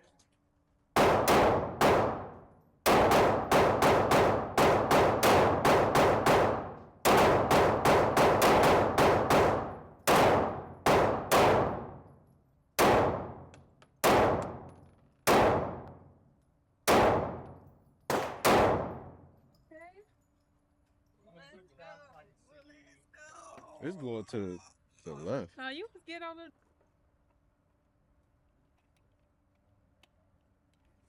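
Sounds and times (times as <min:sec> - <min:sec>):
handgun shots echoing: 0:01.0 - 0:12.1, 0:12.8 - 0:16.0, 0:16.9 - 0:19.3.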